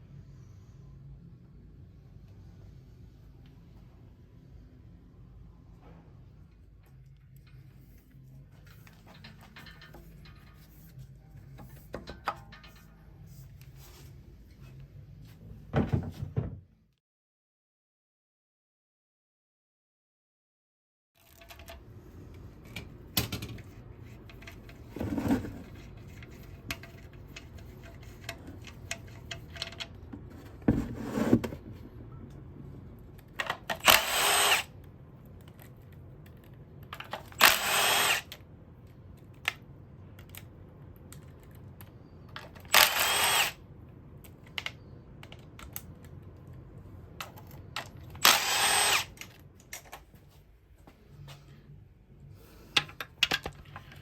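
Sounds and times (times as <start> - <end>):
tools and parts clinking: 6.9 - 13.3
power tool bursts: 33.8 - 34.7, 37.4 - 38.3, 42.7 - 43.6, 48.2 - 49.2.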